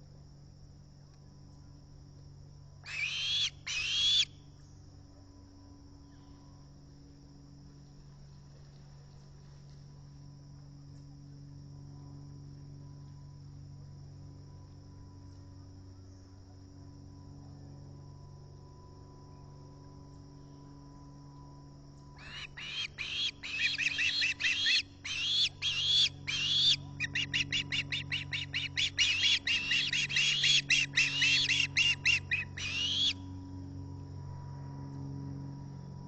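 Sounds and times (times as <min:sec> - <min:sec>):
high insect trill: 0:00.0 - 0:36.0
osprey chirping calls: 0:02.9 - 0:04.3, 0:22.2 - 0:33.2.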